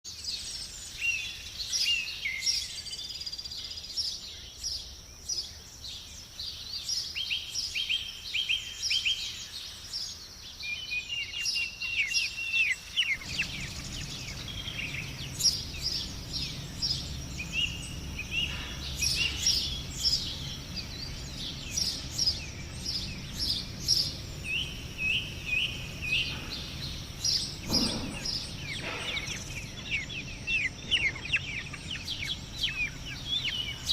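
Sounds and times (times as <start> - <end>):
songbirds chirping and trilling: 0.1 - 33.9
low rumble: 13.2 - 33.9.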